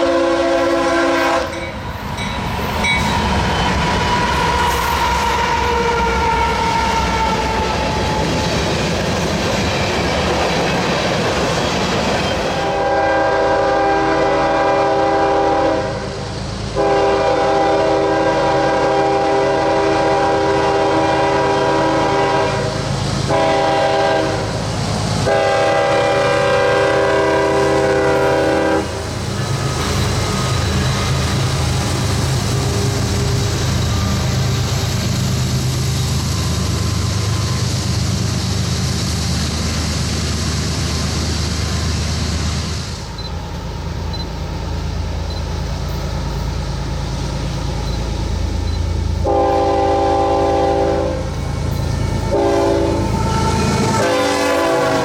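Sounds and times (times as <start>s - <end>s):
locomotive air horn blasts: 0.0s - 1.8s, 4.1s - 8.0s, 12.5s - 24.6s, 25.2s - 29.0s, 49.2s - 55.0s
train rumble and wheel clatter: 0.0s - 55.0s.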